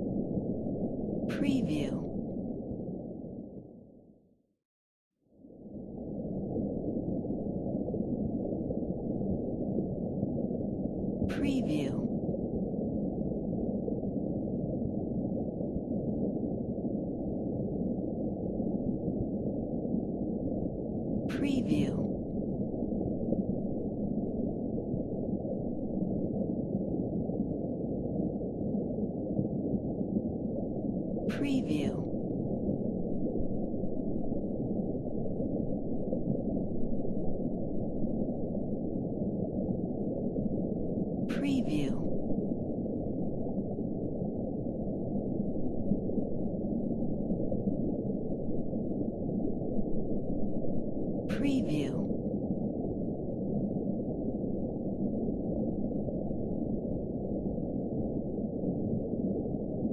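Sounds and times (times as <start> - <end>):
muffled underwater rumble: 0.0 - 4.3, 5.3 - 59.9.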